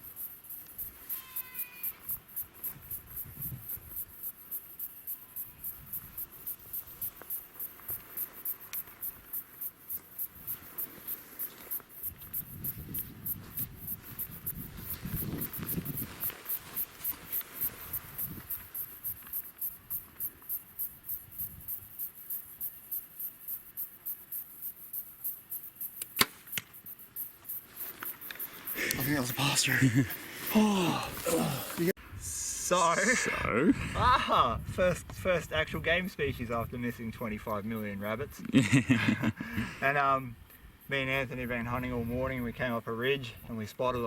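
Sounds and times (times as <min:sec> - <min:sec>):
insects chirping: 0:00.0 - 0:44.0
bow shot crack: 0:26.0 - 0:26.8
faint snap: 0:26.0 - 0:26.8.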